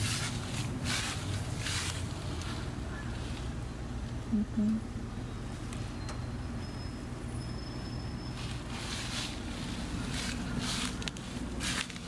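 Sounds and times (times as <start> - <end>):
rustling: 0.0 - 3.6, 8.4 - 12.0
low mechanical hum: 0.0 - 12.0.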